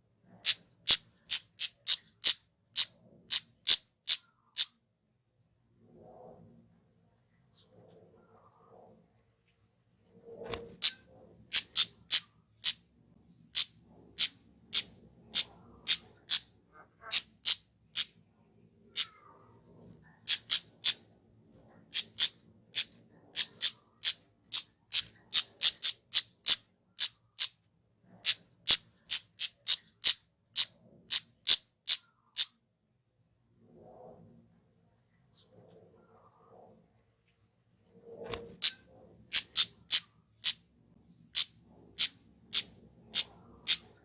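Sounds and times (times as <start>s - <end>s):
bird high-pitched call notes: 0.5s - 4.7s, 10.8s - 12.8s, 17.0s - 18.1s, 20.3s - 21.0s, 22.0s - 27.6s, 28.3s - 32.5s, 38.6s - 40.6s, 41.4s - 44.0s.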